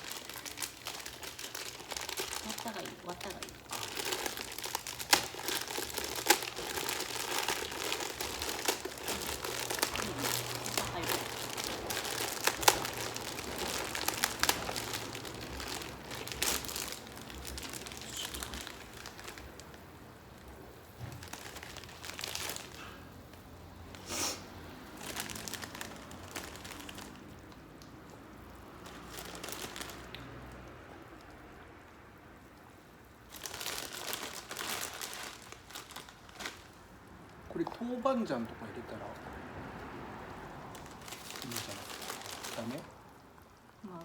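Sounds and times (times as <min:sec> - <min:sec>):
plastic packet crinkling: 0:00.0 - 0:23.4, 0:24.8 - 0:27.8, 0:28.6 - 0:30.5, 0:33.2 - 0:36.9, 0:40.7 - 0:43.5
dry noodles snapping: 0:03.2 - 0:19.8.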